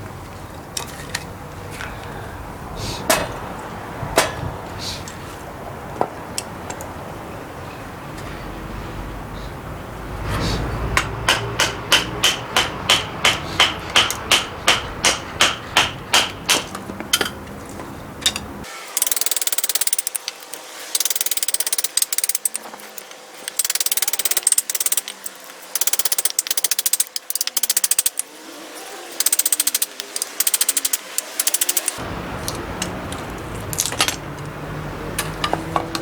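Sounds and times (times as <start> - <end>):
hammer blows on metal: 10.2 - 17.4
fast rattling in spurts: 19.0 - 28.3, 29.0 - 32.0.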